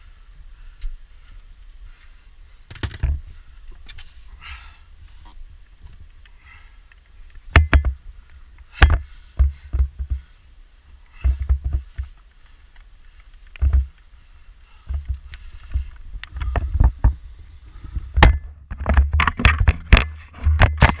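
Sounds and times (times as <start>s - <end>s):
heavy thumps on microphone: 7.5s - 8.0s, 8.7s - 10.3s, 11.2s - 12.1s, 13.6s - 13.9s, 14.9s - 17.2s, 17.8s - 21.0s.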